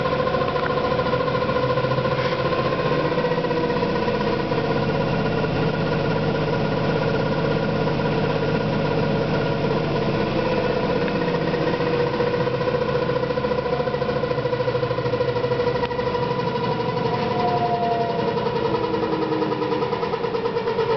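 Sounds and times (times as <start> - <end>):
washing machine droning hum: 0.0 - 20.9.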